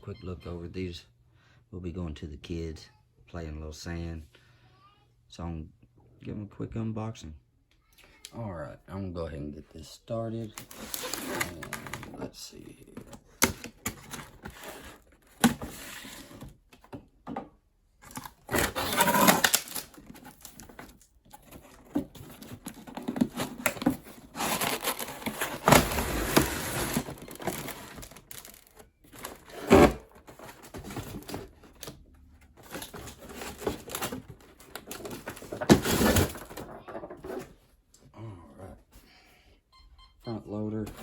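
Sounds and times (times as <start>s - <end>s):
plastic and cardboard crinkling: 10.4s - 17.0s, 18.0s - 37.6s.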